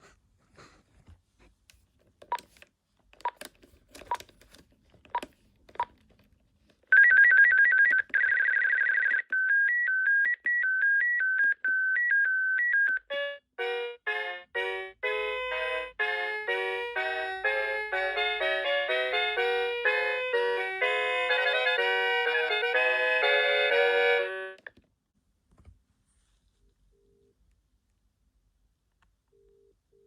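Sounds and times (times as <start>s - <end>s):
telephone electronic ringtones: 6.9s - 13.4s.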